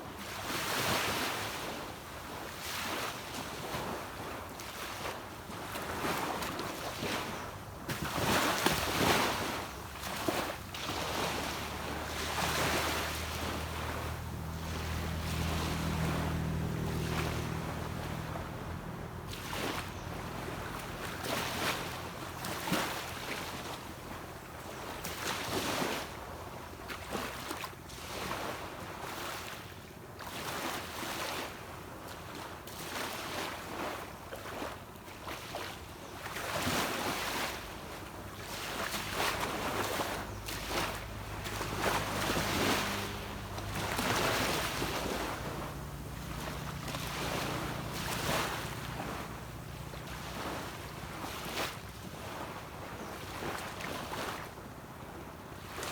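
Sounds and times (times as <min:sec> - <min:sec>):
waves washing onto beach: 0:00.1 - 0:55.9
boat engine humming: 0:08.9 - 0:25.0, 0:37.7 - 0:52.9.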